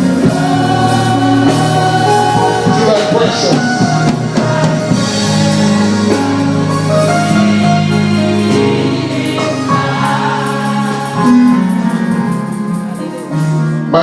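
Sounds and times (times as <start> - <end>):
gospel singing: 0.0 - 14.0
organ chords: 0.0 - 14.0.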